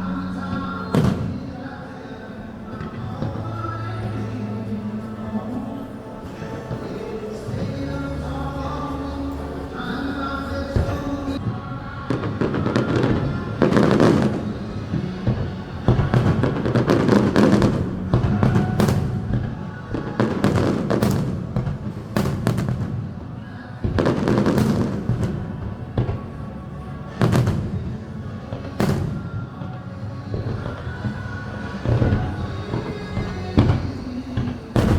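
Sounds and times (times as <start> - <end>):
music playing: 0.0 - 34.9
fireworks bangs with crackle: 0.2 - 1.6, 10.8 - 34.9.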